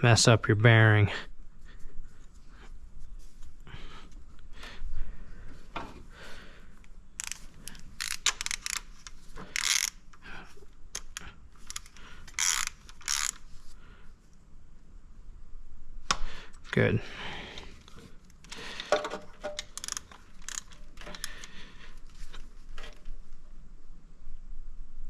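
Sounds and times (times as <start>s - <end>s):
ratchet wrench clicking: 7.2s - 10.0s, 11.0s - 13.4s, 19.5s - 21.5s.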